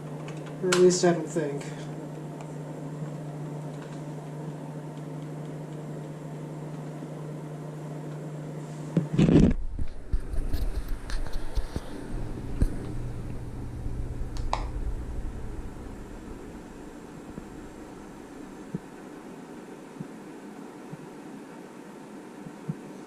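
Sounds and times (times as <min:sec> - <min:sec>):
steady low hum with hiss: 0:00.0 - 0:23.0
low rumble: 0:12.0 - 0:18.9.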